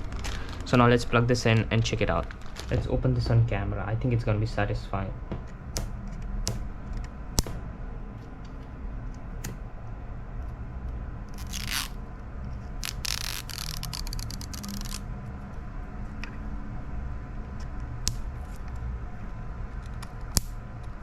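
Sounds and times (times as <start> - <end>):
wrapping crinkling and tearing: 0.0 - 0.8, 1.4 - 2.8, 11.4 - 12.0, 12.8 - 15.0.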